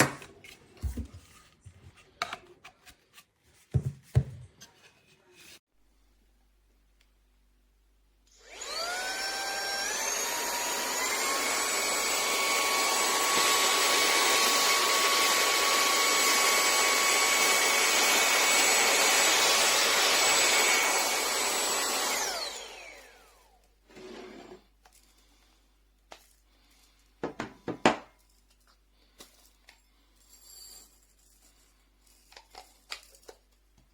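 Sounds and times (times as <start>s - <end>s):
handheld vacuum cleaner whine: 8.3s - 24.6s.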